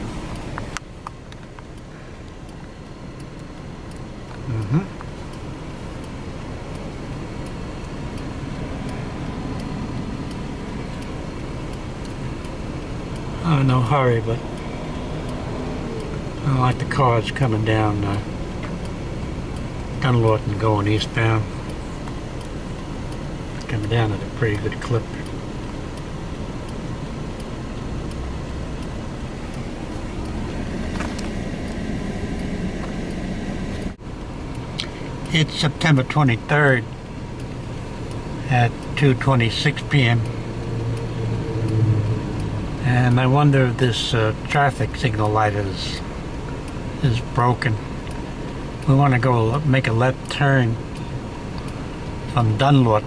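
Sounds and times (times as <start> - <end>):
car idling hum: 0.0 - 53.0
turn signal ticking: 0.0 - 53.0.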